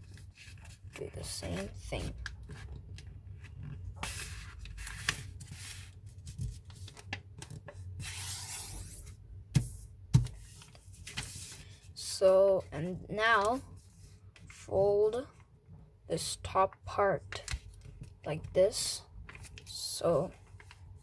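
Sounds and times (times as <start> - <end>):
paper crinkling and scraping: 0.0 - 11.9, 19.3 - 19.8.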